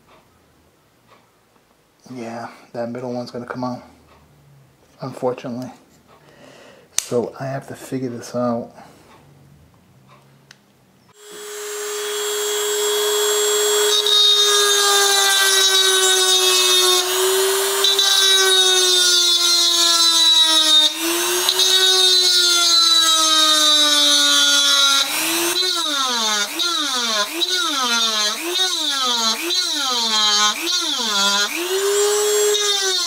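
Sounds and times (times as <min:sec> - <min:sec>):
power tool whining on metal: 0:11.1 - 0:33.0.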